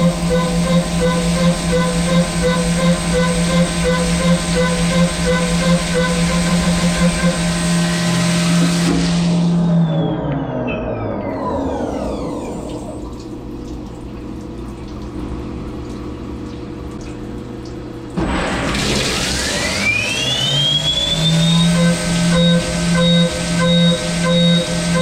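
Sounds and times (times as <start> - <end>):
milling spindle whine: 0.0 - 10.2, 19.3 - 25.0
pulsing cutting tone: 0.0 - 12.3, 19.5 - 25.0
coolant splashing: 11.7 - 25.0.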